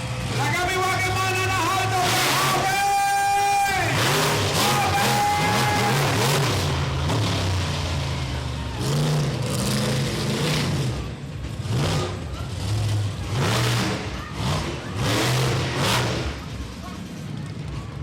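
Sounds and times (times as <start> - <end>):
truck engine revving: 0.0 - 18.0.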